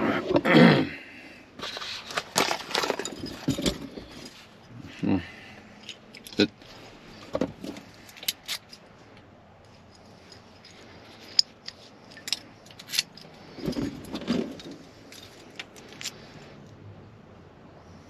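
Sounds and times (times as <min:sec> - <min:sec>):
small metal parts clicking: 0:07.6 - 0:08.9, 0:09.6 - 0:16.2
keys jangling: 0:09.9 - 0:16.2.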